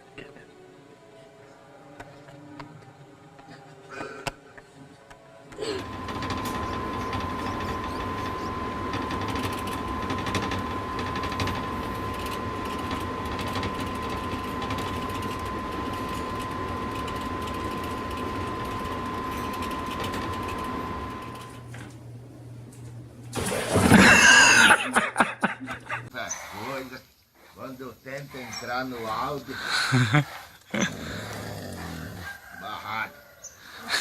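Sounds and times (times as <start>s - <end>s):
constant high whine: 0.0s - 34.0s
small machine whirring and rattling: 5.6s - 24.8s, 27.6s - 34.0s.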